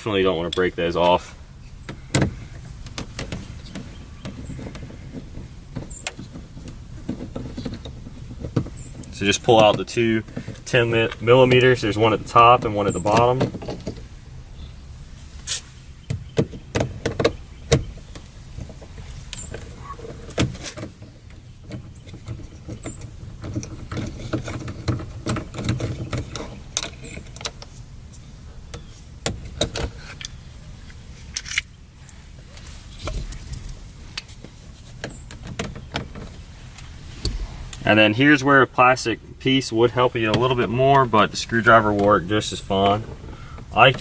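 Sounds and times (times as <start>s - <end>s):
low rumble: 37.0s - 39.5s.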